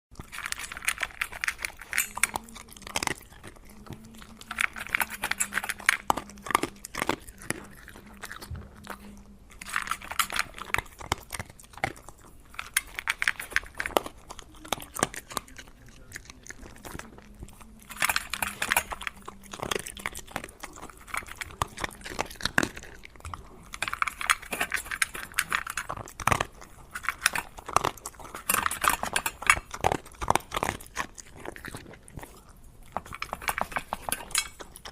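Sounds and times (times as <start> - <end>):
dog crunching dry kibble: 0.1 - 34.9.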